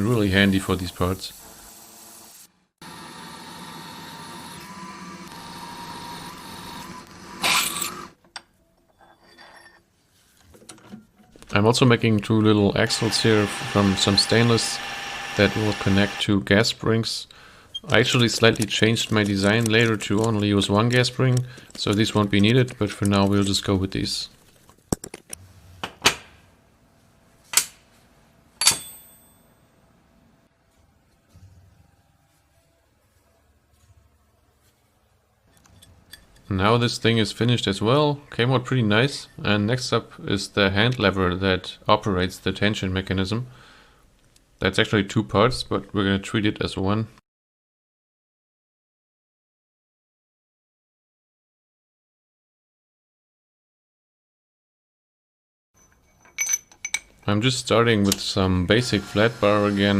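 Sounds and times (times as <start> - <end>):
milling machine whining: 2.8 - 8.2, 12.8 - 16.3, 58.7 - 59.9
metal parts clinking: 17.7 - 23.6, 55.8 - 57.3.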